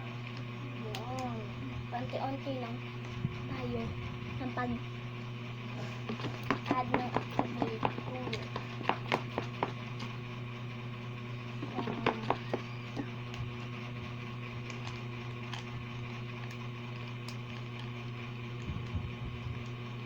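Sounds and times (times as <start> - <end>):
steady low hum: 0.0 - 20.0
slime mixed by hand: 5.7 - 10.0.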